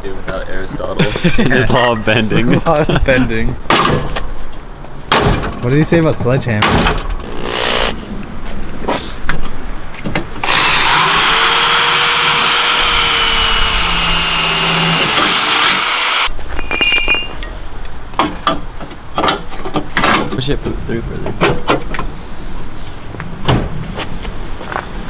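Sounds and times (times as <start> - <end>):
power drill whining: 7.2 - 8.0, 10.4 - 16.3.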